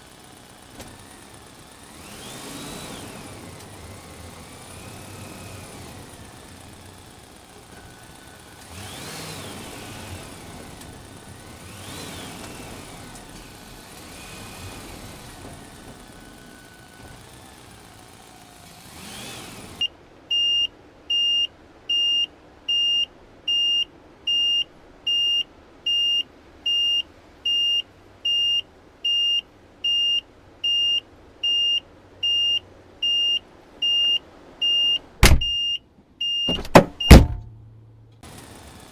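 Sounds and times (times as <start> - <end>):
small electric motors whining: 0.0 - 19.9, 38.2 - 38.9
faint steady tone: 19.7 - 38.2.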